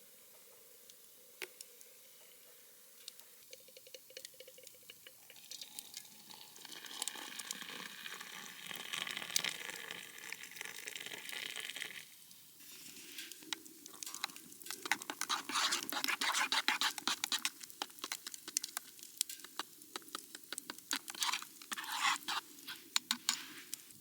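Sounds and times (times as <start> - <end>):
food sizzling: 4.7 - 24.0
utensil scraping in a pan: 12.6 - 18.7, 19.3 - 24.0
small irregular clicks: 13.2 - 23.8.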